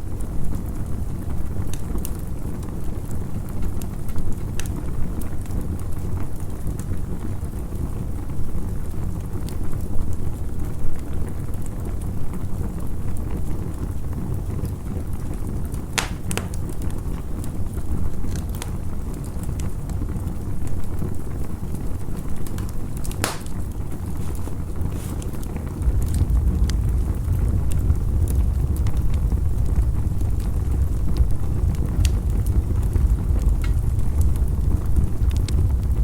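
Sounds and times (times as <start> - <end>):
campfire crackling and popping: 0.0 - 36.0
low wind rumble: 11.2 - 36.0.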